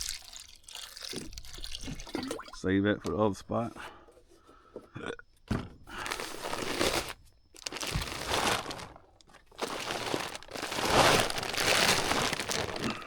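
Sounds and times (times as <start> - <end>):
feed bag crinkling: 5.9 - 13.0.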